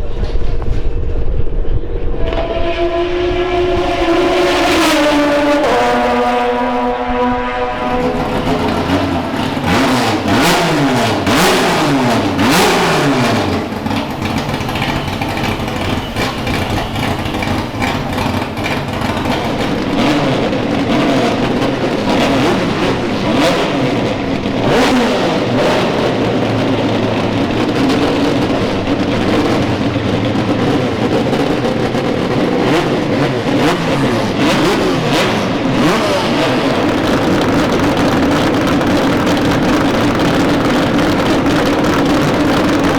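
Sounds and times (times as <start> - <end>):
race car engines passing: 0.0 - 42.9.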